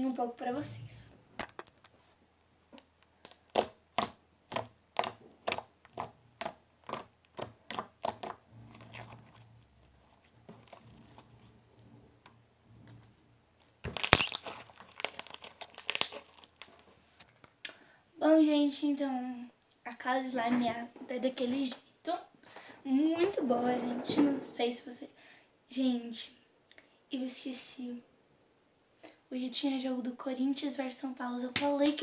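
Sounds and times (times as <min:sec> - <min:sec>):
slime squishing: 0:02.8 - 0:09.4, 0:13.0 - 0:17.5
crunchy slime crackling pops: 0:13.8 - 0:16.9.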